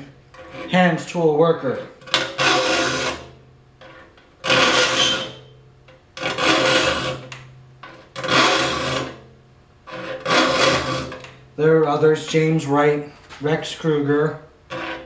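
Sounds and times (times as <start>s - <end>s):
file rasping across saw teeth: 9.9s - 11.3s, 14.7s - 15.0s.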